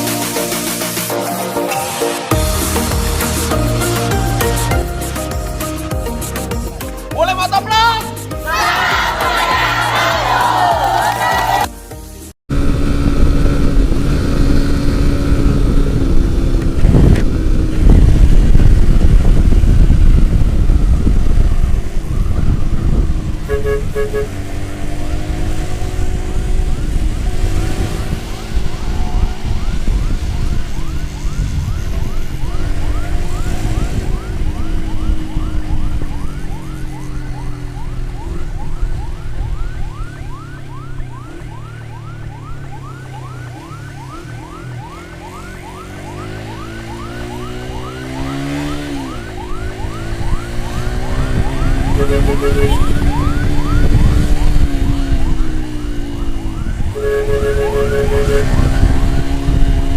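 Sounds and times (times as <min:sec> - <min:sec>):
motorcycle engine rumble: 0:12.5 - 0:59.9
siren wailing and yelping: 0:28.3 - 0:59.2.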